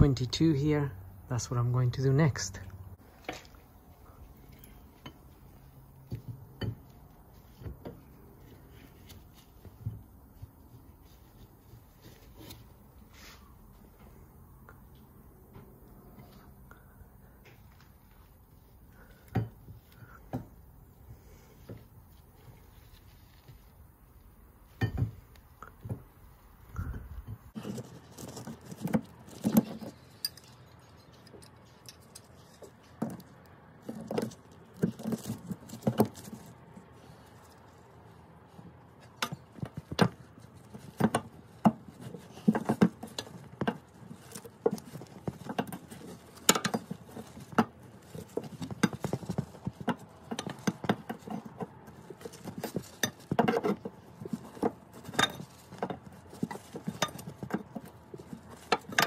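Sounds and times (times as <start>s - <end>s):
spanner clinking on metal: 30.1s - 32.7s.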